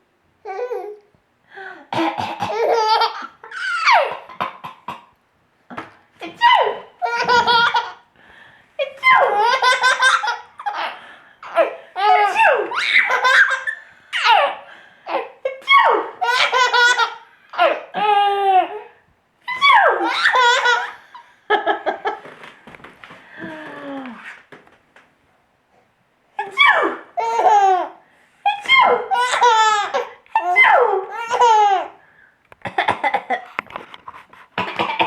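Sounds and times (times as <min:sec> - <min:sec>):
baby laughing: 0:02.3 - 0:04.6, 0:06.2 - 0:08.1, 0:08.8 - 0:18.9, 0:19.5 - 0:21.2, 0:26.4 - 0:32.0.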